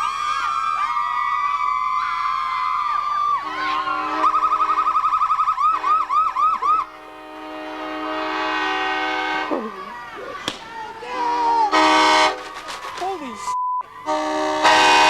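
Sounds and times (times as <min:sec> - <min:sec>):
locomotive horn chord: 0:03.4 - 0:10.2, 0:11.0 - 0:12.5, 0:14.0 - 0:15.0
electronic siren yelping: 0:03.5 - 0:07.0.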